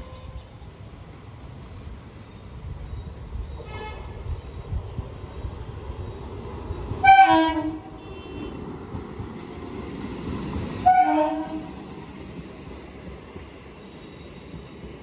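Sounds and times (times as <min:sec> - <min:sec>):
train rumbling on track: 0:00.0 - 0:15.0
train horn blasts: 0:03.6 - 0:04.2, 0:07.0 - 0:08.6, 0:10.8 - 0:11.8.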